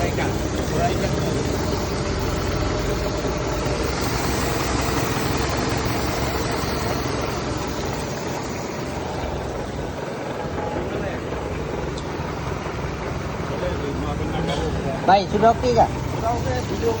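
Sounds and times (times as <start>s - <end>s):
outboard engine running: 0.0s - 17.0s.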